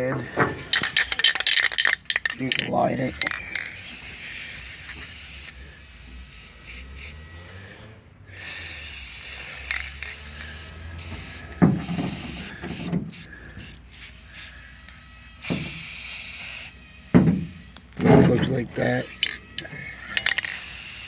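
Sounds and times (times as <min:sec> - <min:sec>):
spray can hissing: 0:00.7 - 0:02.6, 0:03.2 - 0:05.5, 0:06.3 - 0:07.2, 0:08.4 - 0:14.6, 0:15.4 - 0:16.8, 0:20.1 - 0:21.0
dull thumps: 0:11.6 - 0:13.2, 0:17.1 - 0:18.5.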